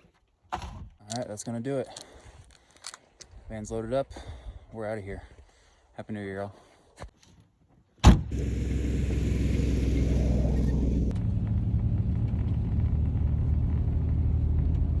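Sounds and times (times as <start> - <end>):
sharp thump: 8.0 - 8.4
van engine running: 8.3 - 15.0.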